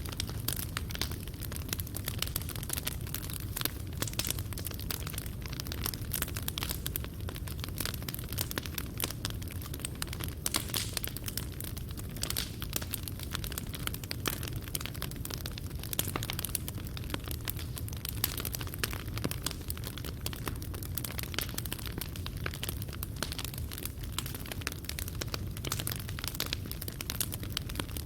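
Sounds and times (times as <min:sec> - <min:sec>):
fire crackling and popping: 0:00.0 - 0:28.0
low fire rumble: 0:00.0 - 0:28.0.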